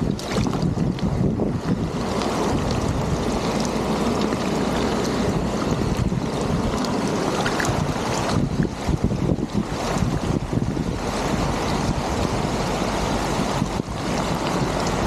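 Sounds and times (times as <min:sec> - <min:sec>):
flowing water rushing: 0:00.0 - 0:15.0
small water splashes: 0:00.0 - 0:15.0
wind noise on microphone: 0:00.0 - 0:15.0.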